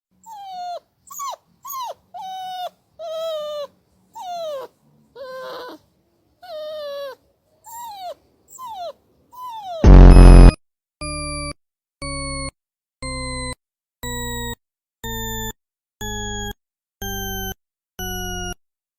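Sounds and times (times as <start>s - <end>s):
dog whining: 0.2s - 10.5s.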